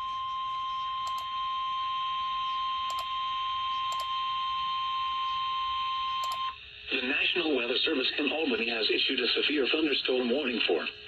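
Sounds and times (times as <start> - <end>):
radio hiss: 6.8 - 11.0.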